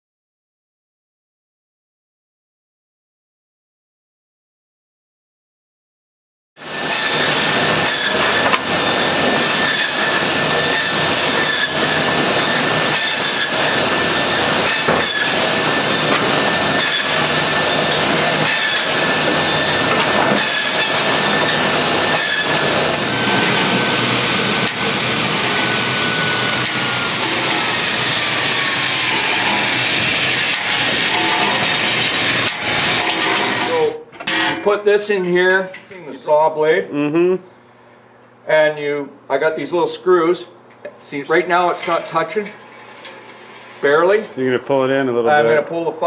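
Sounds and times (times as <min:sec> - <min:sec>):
grinder grinding saw blade: 0:06.6 - 0:34.8, 0:41.1 - 0:44.4.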